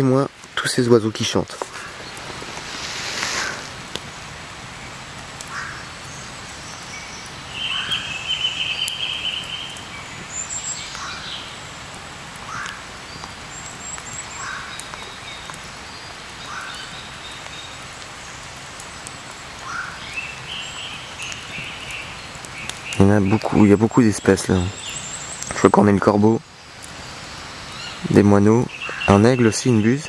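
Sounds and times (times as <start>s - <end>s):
steady background hiss: 0.0s - 30.0s
loud high bird trill: 7.0s - 11.6s.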